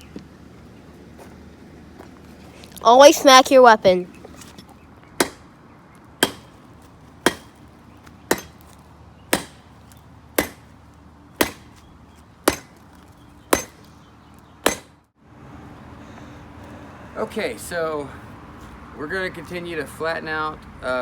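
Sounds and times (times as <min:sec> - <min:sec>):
hammer striking metal on anvil: 0:05.2 - 0:05.4, 0:06.2 - 0:06.5, 0:07.3 - 0:07.6, 0:08.3 - 0:08.6, 0:09.3 - 0:09.6, 0:10.4 - 0:10.6, 0:11.4 - 0:11.7, 0:12.5 - 0:12.8, 0:13.5 - 0:13.8, 0:14.6 - 0:14.9.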